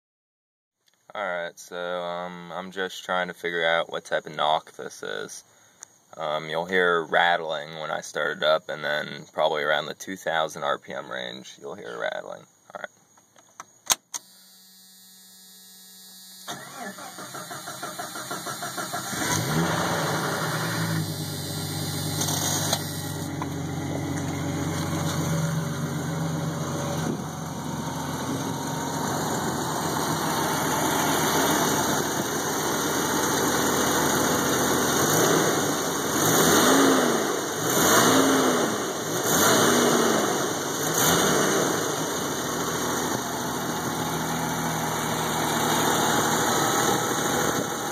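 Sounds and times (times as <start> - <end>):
engine starter cranking: 16.4 - 23.5
engine idling: 16.5 - 36.4, 41.8 - 47.9
engine revving: 16.5 - 47.9.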